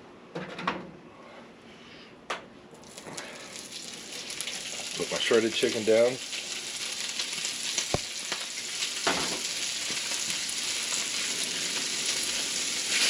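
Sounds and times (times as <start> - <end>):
chicken frying in hot oil: 2.8 - 13.0.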